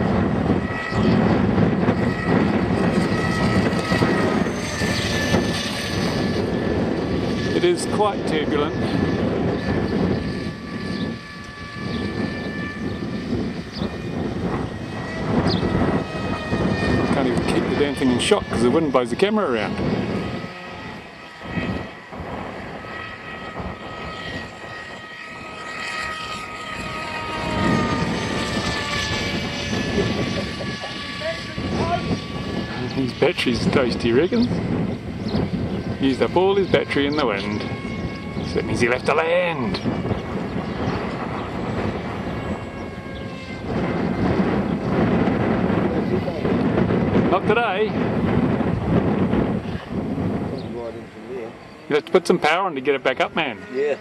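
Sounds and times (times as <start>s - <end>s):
model plane motor whining: 0.0s - 54.0s
wind rumbling on microphone: 0.0s - 54.0s.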